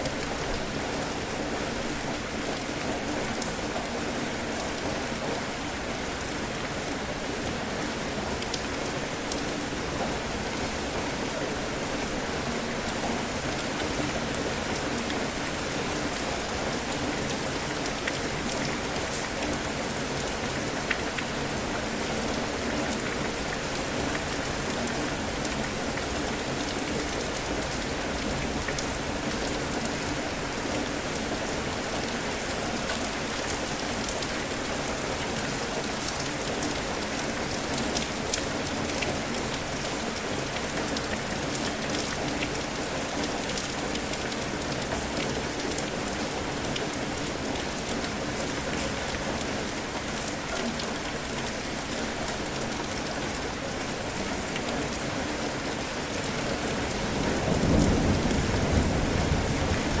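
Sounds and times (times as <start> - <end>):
steady rain falling: 0.0 - 60.0
raindrops pattering: 1.8 - 60.0
low rumble of thunder: 56.8 - 60.0.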